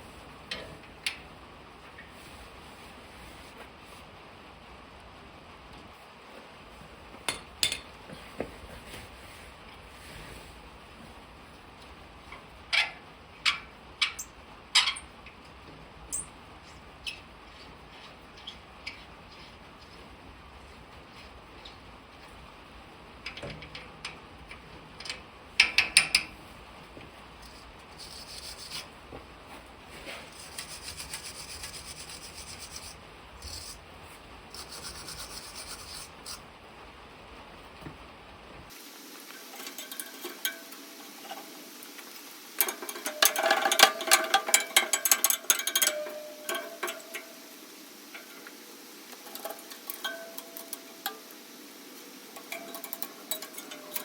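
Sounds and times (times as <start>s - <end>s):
metal clicks and scraping: 39.5s - 41.5s, 42.6s - 47.5s, 48.1s - 51.4s, 52.3s - 54.0s
metal clatter: 42.6s - 47.5s, 49.1s - 51.3s, 52.4s - 54.0s.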